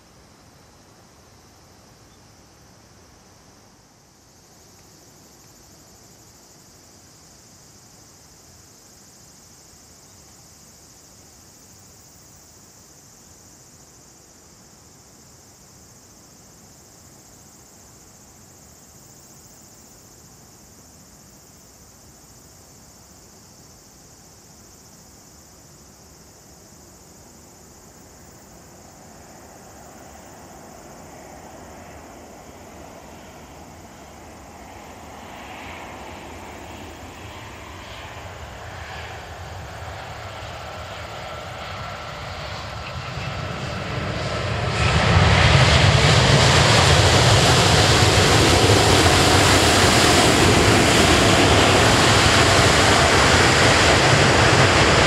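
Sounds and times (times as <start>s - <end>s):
aircraft engine: 0.0s - 55.0s
insects droning in grass: 0.0s - 55.0s.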